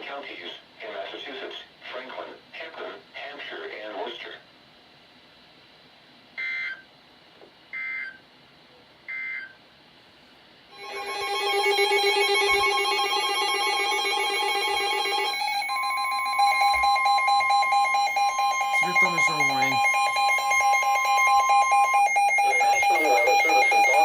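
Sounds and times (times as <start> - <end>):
electronic alert alarm pulsing: 10.7 - 24.0
steady warning tone: 10.7 - 24.0
digital data bursts screeching: 17.5 - 24.0.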